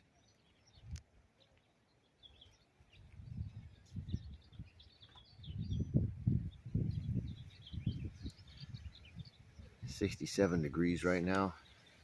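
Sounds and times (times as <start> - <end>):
birds chirping faintly: 0.0 - 12.0
wind buffeting microphone: 2.3 - 11.5.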